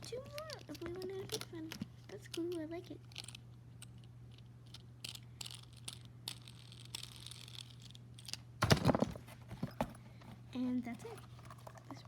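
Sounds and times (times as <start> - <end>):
plastic fidget toys clicking: 0.0 - 3.9.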